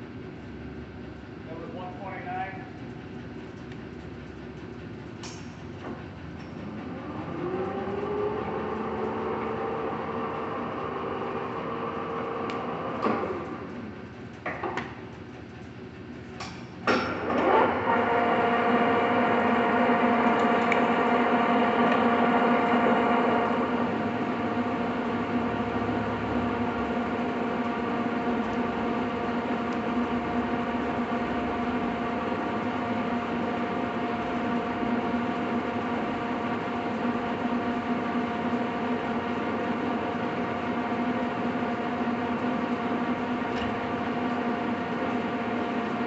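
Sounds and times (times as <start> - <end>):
lathe gear whine: 5.6 - 14.6, 17.1 - 46.0.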